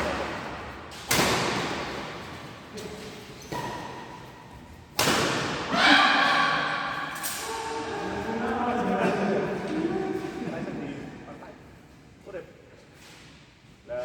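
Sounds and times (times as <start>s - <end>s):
rackets hitting shuttlecock: 0.0s - 4.3s, 4.9s - 5.8s
voices and shouts: 5.7s - 10.2s.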